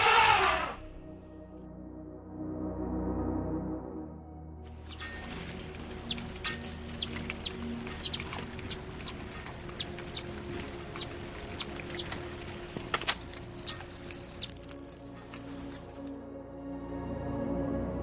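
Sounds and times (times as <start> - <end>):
high-pitched insect chorus: 4.7 - 16.1.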